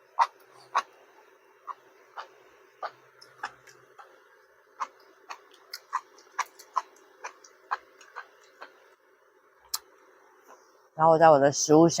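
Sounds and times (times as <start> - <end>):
faint steady hum: 0.0 - 12.0
eating crunches: 1.7 - 4.2, 4.8 - 8.9.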